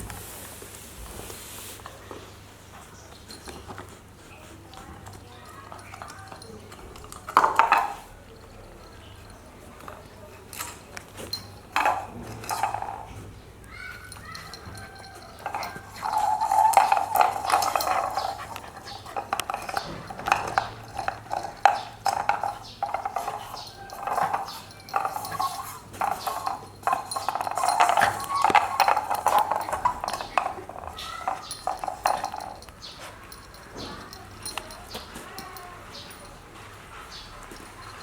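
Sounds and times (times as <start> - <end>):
puppy making play noises: 13.6 - 38.0.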